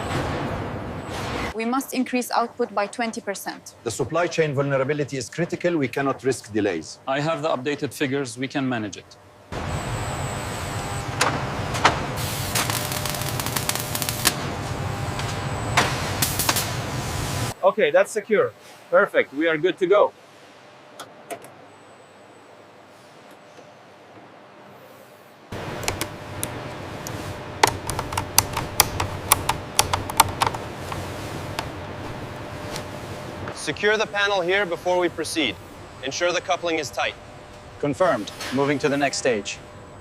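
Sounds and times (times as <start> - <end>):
machinery hum: 0.0 - 40.0
sharp knocks and clicks: 25.8 - 26.6, 27.6 - 31.7.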